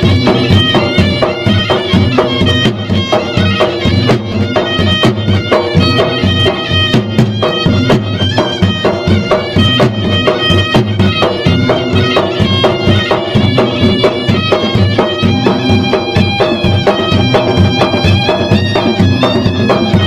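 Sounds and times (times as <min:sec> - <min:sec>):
drums beaten in fast rhythm: 0:00.0 - 0:20.0
wind instrument piping melody: 0:00.0 - 0:20.0.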